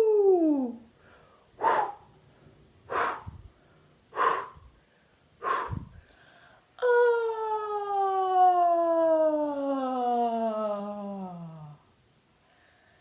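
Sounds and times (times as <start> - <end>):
woman singing sliding ooh: 0.0 - 0.9, 6.8 - 11.8
woman's breathy puffs: 1.0 - 2.1, 2.9 - 3.5, 4.1 - 6.7.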